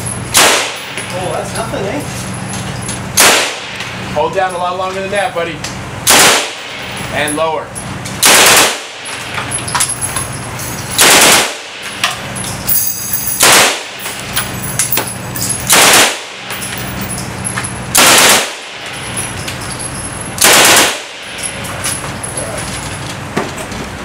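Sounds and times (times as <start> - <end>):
machine pistol firing bursts: 0.3 - 0.9, 3.2 - 3.7, 6.1 - 6.7, 8.2 - 9.0, 11.0 - 11.8, 13.4 - 14.0, 15.7 - 16.5, 17.9 - 18.8, 20.4 - 21.3.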